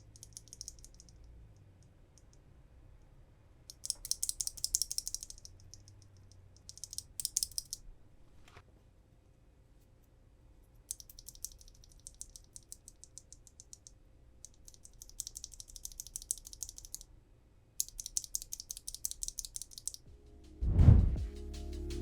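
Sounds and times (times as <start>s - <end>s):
loud low thud: 20.6s - 21.4s.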